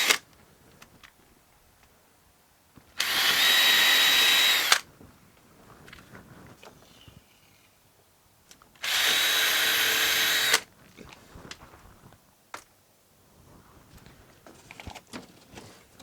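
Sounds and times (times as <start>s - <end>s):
power drill boring through plywood: 3.0s - 4.8s, 8.8s - 10.6s.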